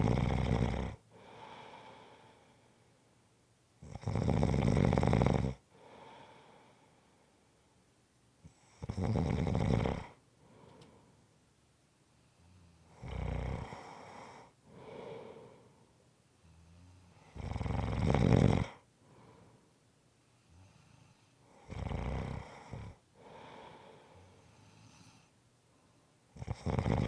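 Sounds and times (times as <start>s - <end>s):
person snoring: 0.0s - 1.8s, 8.8s - 10.2s, 13.0s - 15.6s, 17.3s - 18.8s, 21.6s - 24.3s, 26.4s - 27.0s
soft breath: 1.1s - 3.2s, 5.7s - 7.7s, 10.4s - 11.3s, 13.8s - 17.4s, 19.0s - 21.7s, 22.6s - 26.2s.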